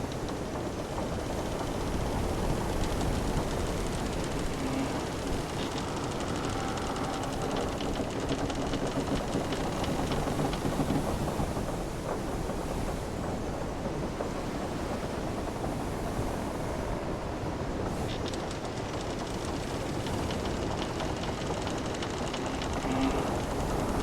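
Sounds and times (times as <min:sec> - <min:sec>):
small wooden ticks: 0:00.0 - 0:13.0, 0:17.7 - 0:24.0
wind: 0:00.0 - 0:24.0
ship timbers creaking: 0:02.9 - 0:11.0, 0:17.9 - 0:24.0.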